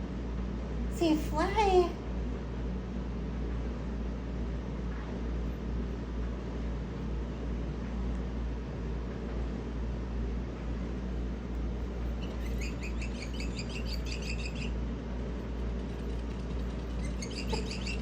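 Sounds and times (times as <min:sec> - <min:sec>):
steady low hum: 0:00.0 - 0:18.0
toy bird chirping: 0:12.2 - 0:14.7, 0:15.9 - 0:18.0.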